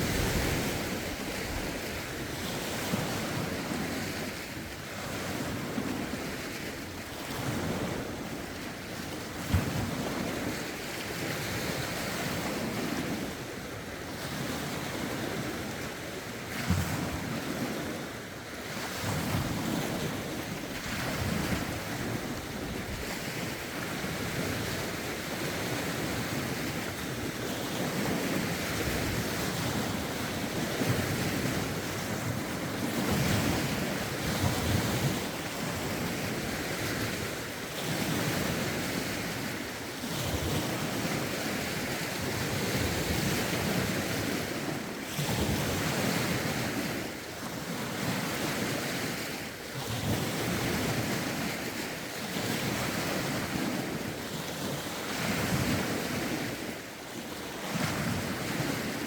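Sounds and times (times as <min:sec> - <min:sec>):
wind buffeting microphone: 0:00.0 - 0:06.5, 0:18.7 - 0:47.1
lake waves lapping ashore: 0:00.0 - 0:59.0.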